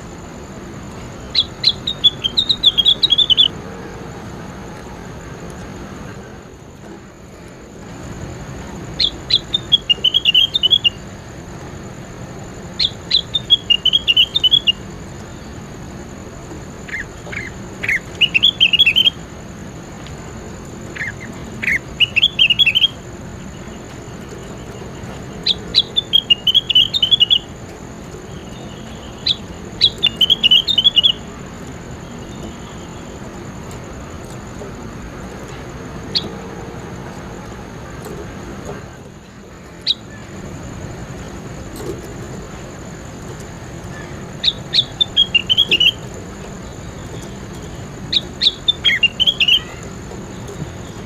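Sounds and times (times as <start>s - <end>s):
songbird chirping: 0.0s - 3.6s, 5.6s - 51.0s
steady background hiss: 0.0s - 51.0s.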